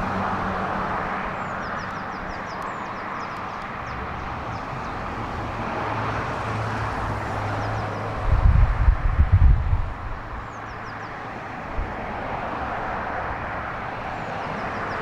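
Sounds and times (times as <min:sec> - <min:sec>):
small birds chirping: 0:01.4 - 0:05.2.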